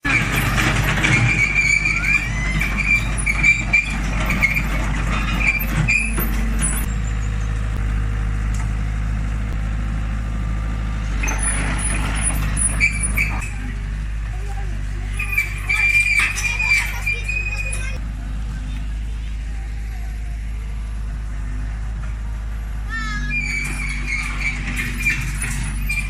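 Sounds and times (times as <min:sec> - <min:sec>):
high squeaking: 0:00.0 - 0:07.8, 0:11.2 - 0:13.9, 0:15.0 - 0:18.0, 0:23.0 - 0:26.0
diesel engine humming: 0:00.0 - 0:26.0.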